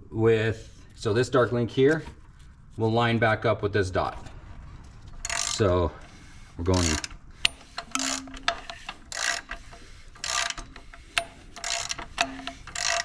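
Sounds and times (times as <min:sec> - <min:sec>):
ratchet wrench clicking: 0:05.2 - 0:05.8, 0:06.7 - 0:13.0.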